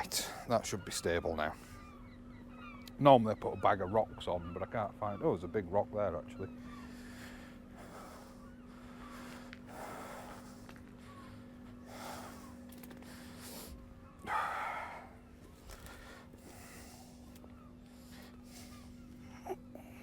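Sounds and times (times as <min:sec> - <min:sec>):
steady low hum: 0:00.0 - 0:20.0
man breathing hard: 0:06.8 - 0:20.0.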